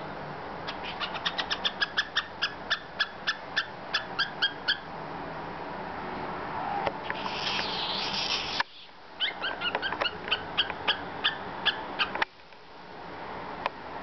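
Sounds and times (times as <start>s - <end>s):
cockatiel chirping: 0.7s - 4.9s, 7.1s - 12.2s.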